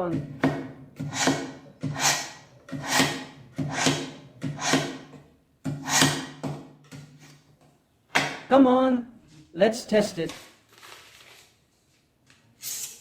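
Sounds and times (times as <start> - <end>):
knife scraping through sharpener: 2.0 - 3.1.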